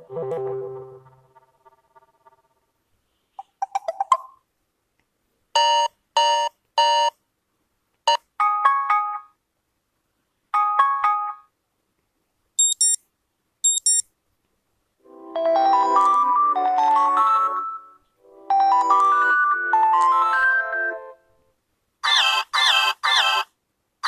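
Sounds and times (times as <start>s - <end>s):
rising plucked notes: 0.0s - 1.5s
phone beeps: 12.6s - 13.0s, 13.6s - 14.0s.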